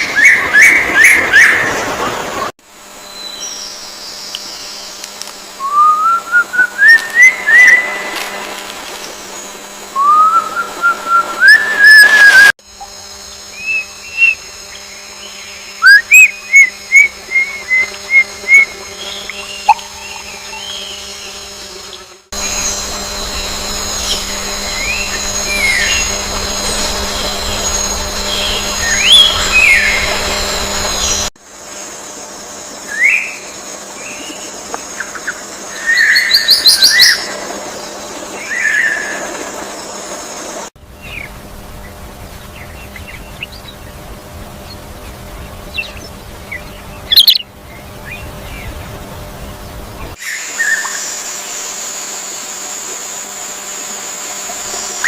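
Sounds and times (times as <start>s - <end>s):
bird whistling rising notes: 5.6s - 8.3s, 9.9s - 12.5s, 15.2s - 21.3s, 22.4s - 31.3s, 45.7s - 47.4s.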